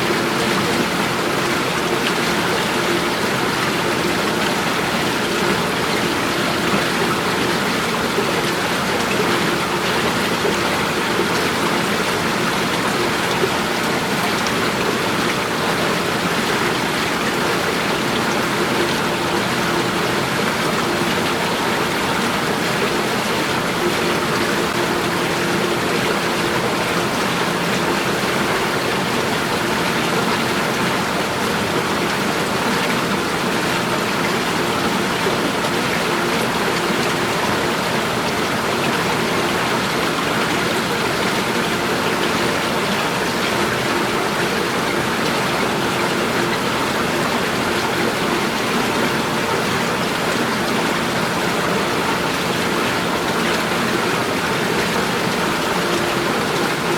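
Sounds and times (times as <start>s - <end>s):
running water splashing: 0.0s - 56.9s.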